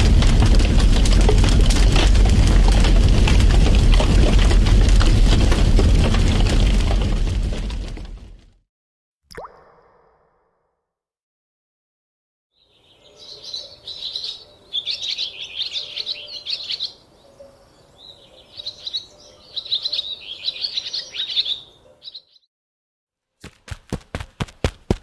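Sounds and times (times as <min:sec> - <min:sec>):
songbird chirping: 0:12.6 - 0:22.5.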